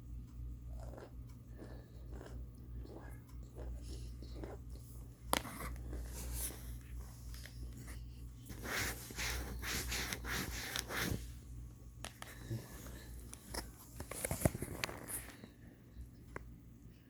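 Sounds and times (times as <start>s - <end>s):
crunching and chewing: 0.6s - 7.9s.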